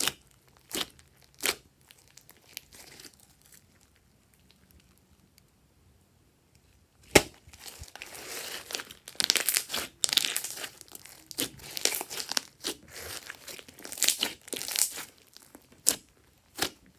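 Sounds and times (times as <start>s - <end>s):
slime crackling and popping: 0.0s - 3.6s, 7.0s - 16.9s
sharp snap of slime: 7.0s - 7.4s.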